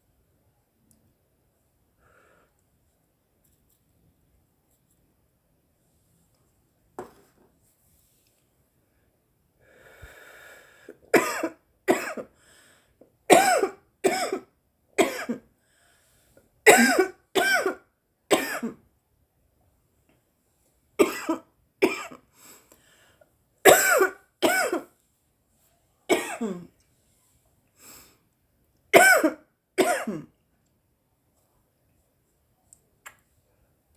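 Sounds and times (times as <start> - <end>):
woman coughing hard: 11.1 - 12.3, 13.3 - 15.4, 16.7 - 18.8, 21.0 - 22.2, 23.6 - 24.9, 26.1 - 26.7, 29.0 - 30.3.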